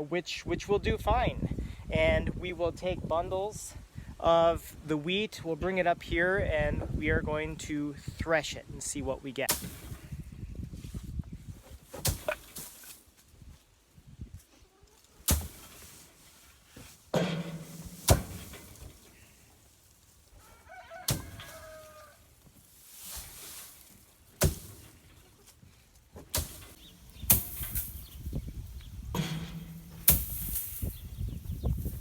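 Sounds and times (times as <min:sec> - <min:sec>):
wheat bundles beaten on floor: 0:15.2 - 0:19.4.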